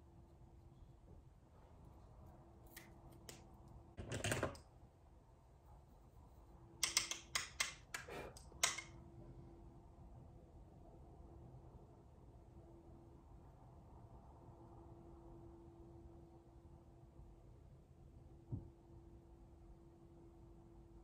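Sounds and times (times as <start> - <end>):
clicks and taps of makeup items: 6.8 - 8.9.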